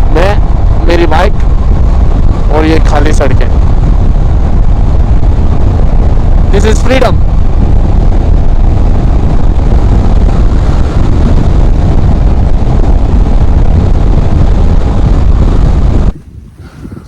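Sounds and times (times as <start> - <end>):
motorcycle engine running: 0.0 - 16.3
wind buffeting microphone: 0.0 - 17.0.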